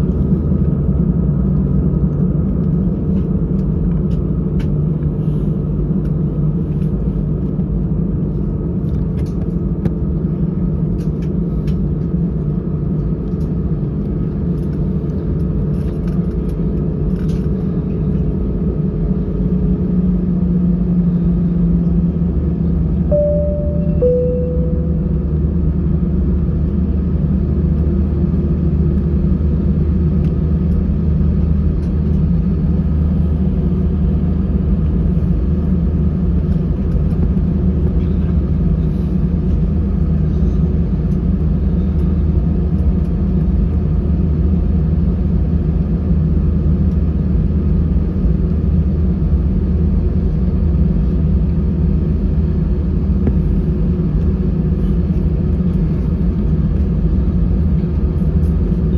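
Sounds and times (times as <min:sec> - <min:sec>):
jet engines cabin rumble: 0:00.0 - 0:58.9.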